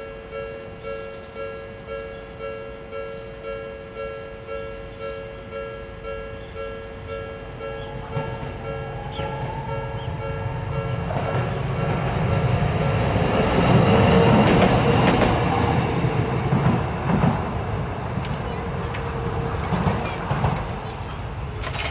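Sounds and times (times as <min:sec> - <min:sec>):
crossing warning bell: 0:00.0 - 0:16.8
tram wheels rumbling on rails: 0:06.1 - 0:21.9
wheel clacks: 0:18.1 - 0:21.9.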